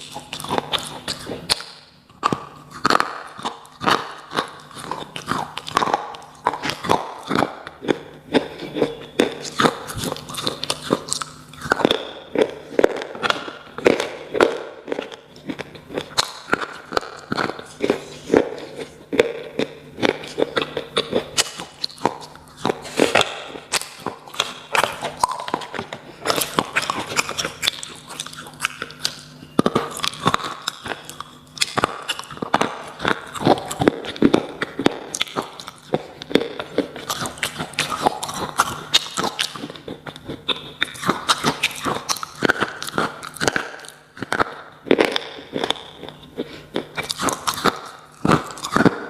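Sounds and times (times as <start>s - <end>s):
crunchy chewing: 0.0s - 49.0s.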